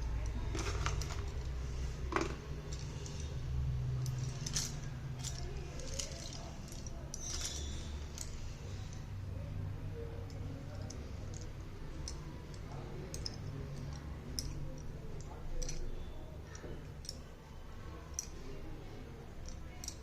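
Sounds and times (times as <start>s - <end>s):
low steady hum: 0.0s - 20.0s
slate pencils clicking together: 4.0s - 9.0s, 10.3s - 17.3s, 19.4s - 20.0s.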